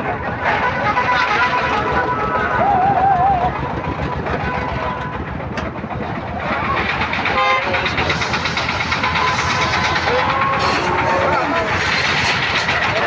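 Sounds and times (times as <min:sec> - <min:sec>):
traffic and engines din: 0:00.0 - 0:13.0.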